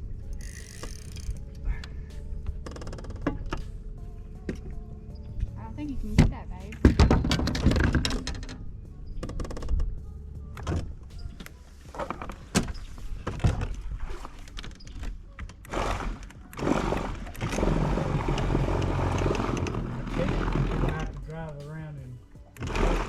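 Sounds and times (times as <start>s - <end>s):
low steady rumble: 0.0s - 12.0s
sharp knocks and clunks: 6.1s - 8.6s.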